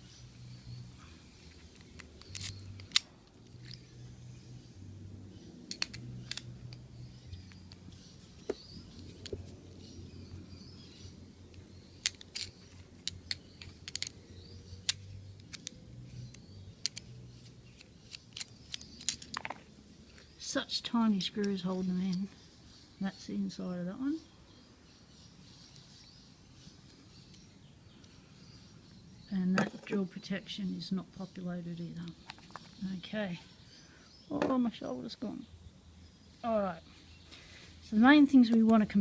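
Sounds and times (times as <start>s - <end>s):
low steady hum: 0.0s - 25.2s
small metallic clicks and taps: 1.4s - 3.9s, 5.6s - 9.4s, 11.5s - 14.2s, 14.8s - 20.3s.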